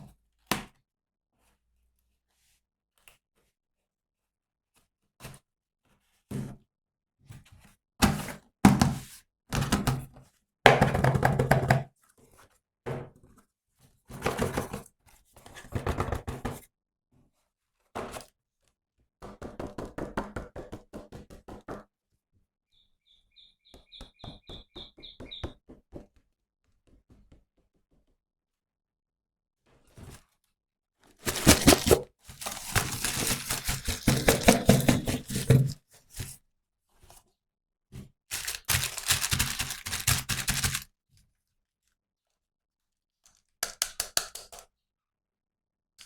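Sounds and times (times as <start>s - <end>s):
packaging rustling: 31.2s - 35.8s, 38.3s - 40.8s
thunks and knocks of toys: 31.2s - 35.8s, 38.4s - 40.8s.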